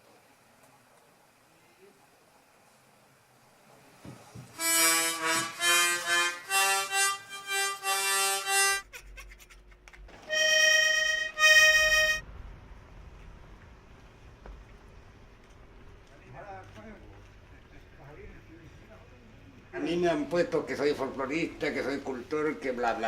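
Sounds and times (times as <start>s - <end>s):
accordion playing: 4.6s - 9.3s, 10.2s - 12.2s.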